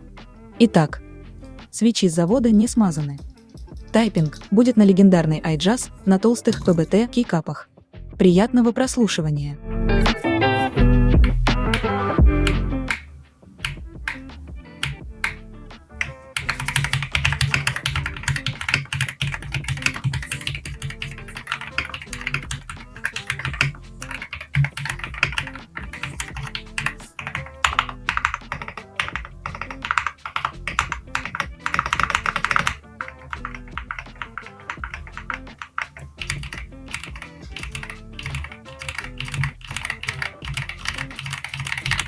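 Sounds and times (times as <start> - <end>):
background music: 0.0 - 42.0
mechanical keyboard typing: 14.8 - 15.4, 16.0 - 42.0.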